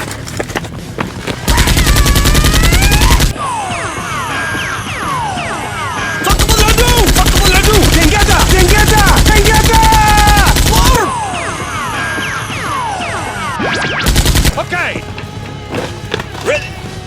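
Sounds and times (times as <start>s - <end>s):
automatic gunfire burst: 6.3s - 11.0s.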